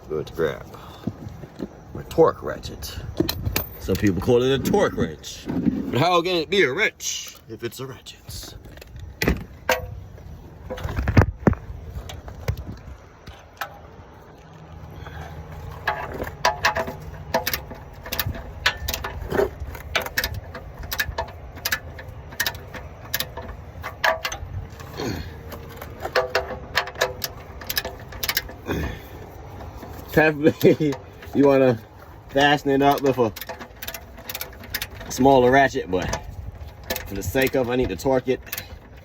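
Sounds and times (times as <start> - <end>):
torque ratchet clicking: 15.8 - 39.0.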